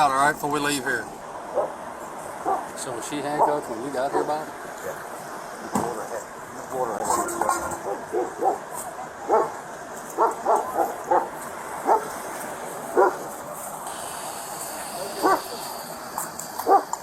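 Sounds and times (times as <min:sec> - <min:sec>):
dog barking: 0:01.5 - 0:01.8, 0:02.4 - 0:02.7, 0:03.4 - 0:04.4, 0:07.8 - 0:08.6, 0:09.3 - 0:09.6, 0:10.2 - 0:12.1, 0:13.0 - 0:13.3, 0:15.2 - 0:15.6, 0:16.6 - 0:17.0.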